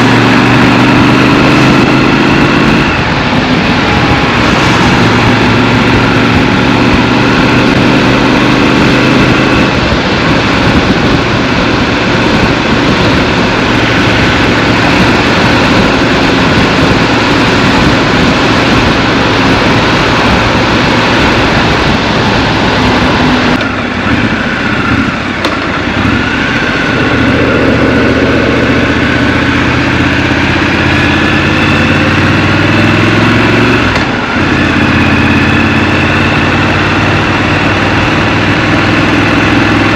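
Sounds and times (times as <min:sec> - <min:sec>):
motorcycle engine: 0:00.0 - 0:39.9
road and wind noise: 0:00.0 - 0:39.9.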